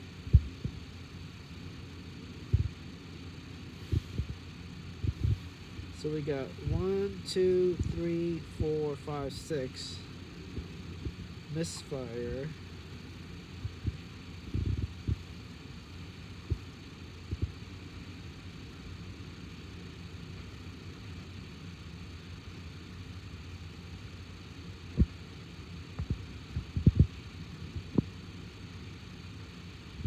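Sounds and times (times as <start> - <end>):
short low thumps: 0.3 - 0.8, 2.5 - 2.8, 5.0 - 5.5, 13.6 - 15.2.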